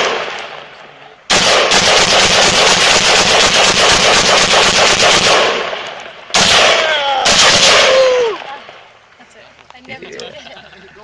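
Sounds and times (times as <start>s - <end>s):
gunshot echo: 0.0s - 8.2s
rapid rifle shots: 1.3s - 8.0s.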